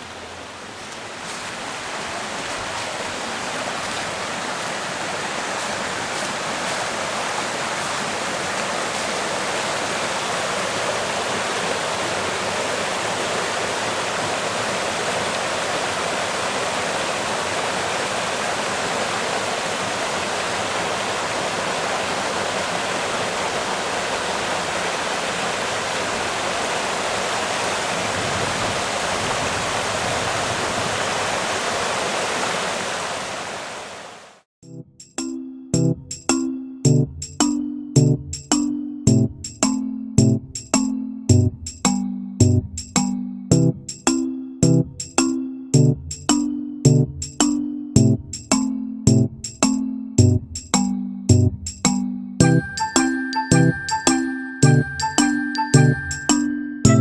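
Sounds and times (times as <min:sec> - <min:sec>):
waterfall rushing: 0:00.0 - 0:34.4.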